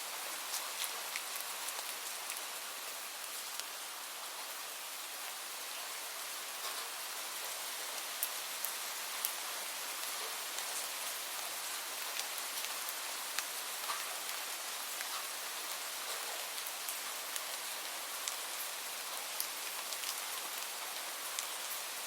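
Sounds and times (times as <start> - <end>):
light rain hiss: 0.0 - 22.0
raindrop ticks: 6.6 - 6.9, 13.4 - 14.4.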